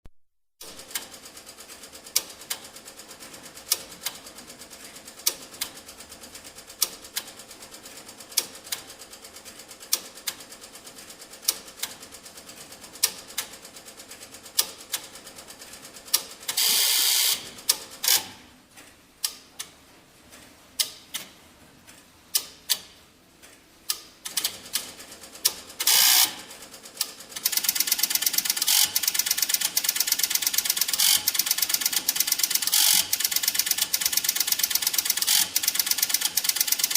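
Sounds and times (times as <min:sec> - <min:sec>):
teletype machine clattering: 0:24.3 - 0:36.9.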